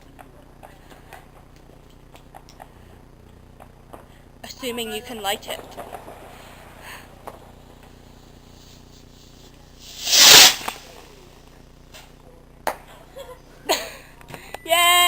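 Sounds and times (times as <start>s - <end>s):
firework crack: 7.2s - 11.4s
firework whoosh: 8.1s - 11.2s.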